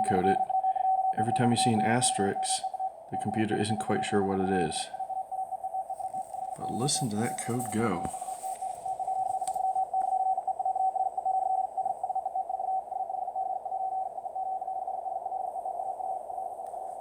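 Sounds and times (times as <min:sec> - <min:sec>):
fast morse code tone: 0:00.0 - 0:12.4
faint radio hiss: 0:00.0 - 0:17.0.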